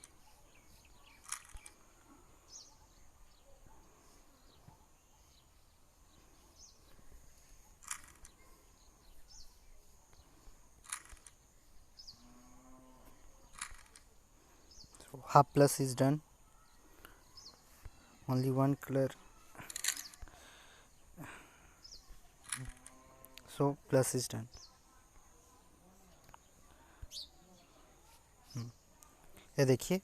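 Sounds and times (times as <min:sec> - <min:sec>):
puzzle cube plastic clicks: 0:01.2 - 0:01.8, 0:07.8 - 0:08.4, 0:10.8 - 0:11.4, 0:13.5 - 0:14.1, 0:22.4 - 0:22.9.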